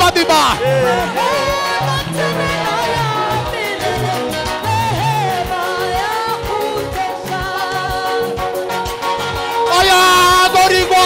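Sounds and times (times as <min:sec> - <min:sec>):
band with bass and drums: 0:00.0 - 0:11.0
person singing long notes: 0:00.6 - 0:06.5.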